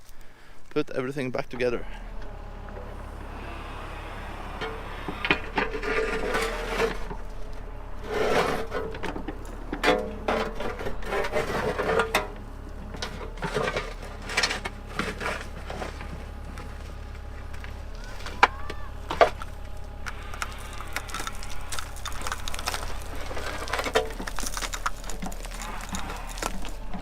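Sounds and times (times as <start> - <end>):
excavator engine humming: 0.0 - 27.0
hydraulic whine: 1.4 - 27.0
bucket scraping dirt and rocks: 1.6 - 27.0.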